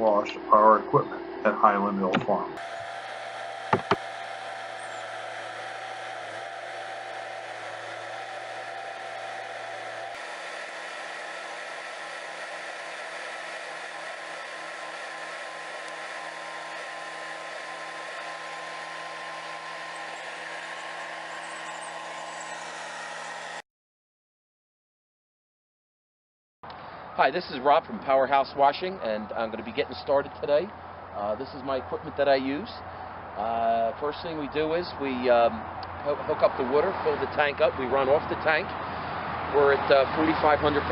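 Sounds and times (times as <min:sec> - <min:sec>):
machine running with held tones: 0:00.0 - 0:23.6.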